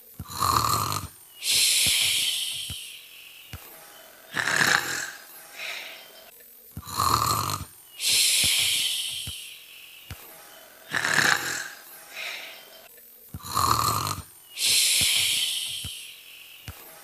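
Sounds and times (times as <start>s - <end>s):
imitated snoring: 0.2s - 3.0s, 4.1s - 9.6s, 10.7s - 16.8s.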